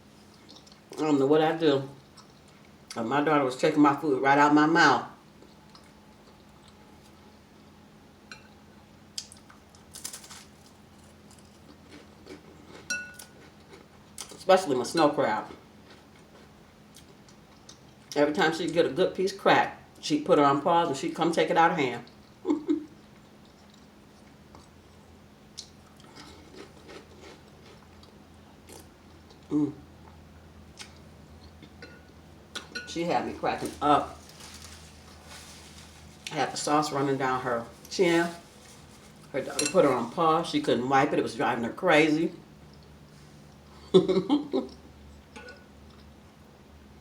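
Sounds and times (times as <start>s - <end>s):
soft eating sounds: 0.0s - 19.2s, 19.8s - 46.6s
person chewing soup: 0.1s - 1.0s, 2.0s - 3.0s, 5.3s - 7.3s, 11.0s - 14.4s, 15.8s - 18.2s, 22.1s - 32.8s, 42.6s - 43.9s, 44.6s - 46.2s
spoon clinking against glass bowl: 12.9s - 13.3s.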